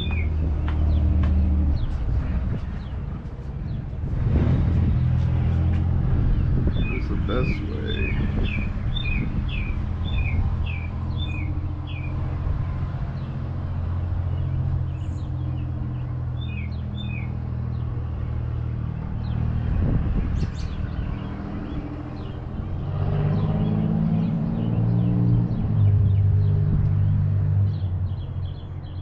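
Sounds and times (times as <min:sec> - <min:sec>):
bird chirping: 0:00.0 - 0:01.1, 0:06.2 - 0:12.2, 0:14.3 - 0:18.0.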